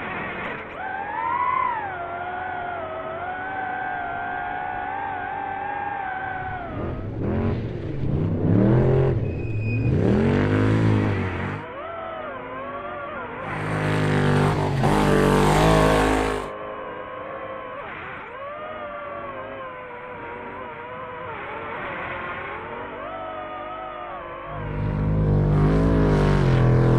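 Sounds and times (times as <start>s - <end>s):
truck engine revving: 6.5s - 11.7s, 13.4s - 16.6s, 24.4s - 26.9s
tyres on dirt: 13.5s - 16.5s.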